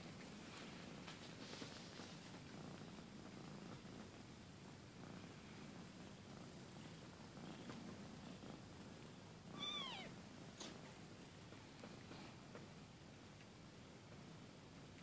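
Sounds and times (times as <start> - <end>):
kitten purring: 0.0 - 13.0
kitten mewing: 9.6 - 10.1.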